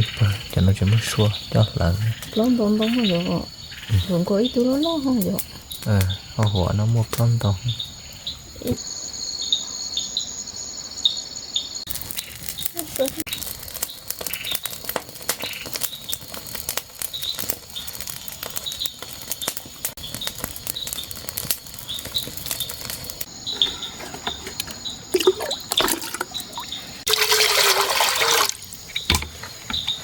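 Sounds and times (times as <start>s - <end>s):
water splashing: 25.1s - 28.8s
handling clicks and knocks: 28.8s - 30.0s.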